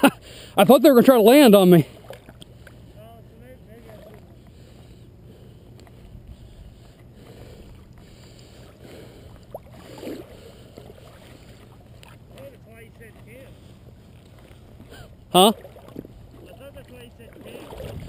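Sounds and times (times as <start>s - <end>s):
wind rumble on microphone: 17.4s - 18.0s.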